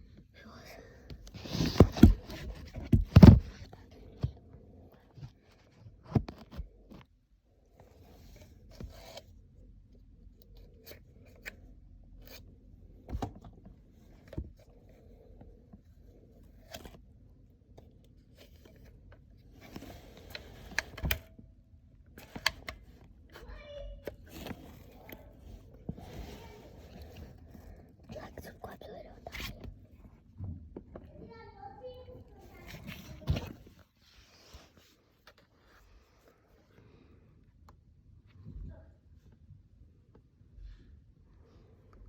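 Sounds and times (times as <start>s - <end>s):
faint scraping and rustling: 0.0s - 9.5s, 17.7s - 21.2s, 22.2s - 37.3s.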